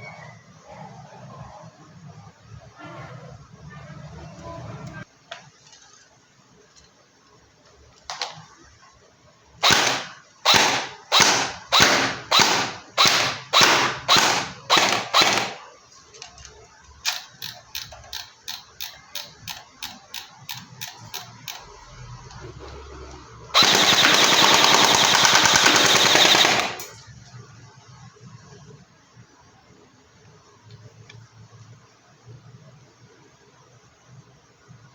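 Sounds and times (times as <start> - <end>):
airsoft rifle shots: 9.6 - 15.6, 23.6 - 26.9
full-auto airsoft burst: 9.6 - 15.6, 23.6 - 26.9.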